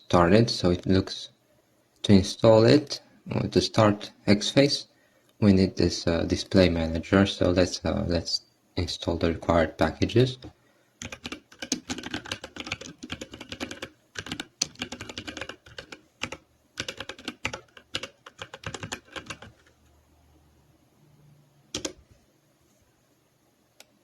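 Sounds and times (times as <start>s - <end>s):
typing on computer keyboard: 11.0s - 19.8s, 21.7s - 22.0s.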